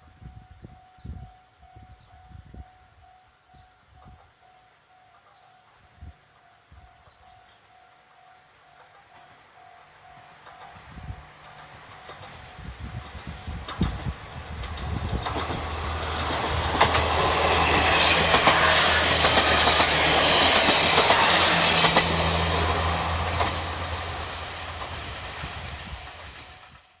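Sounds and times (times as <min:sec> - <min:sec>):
train wheels clacking on rail joints: 0:08.7 - 0:27.0.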